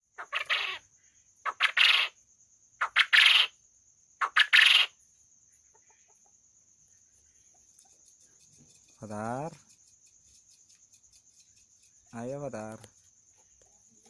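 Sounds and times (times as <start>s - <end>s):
quail calling: 0.2s - 2.2s, 2.8s - 3.6s, 4.2s - 5.0s.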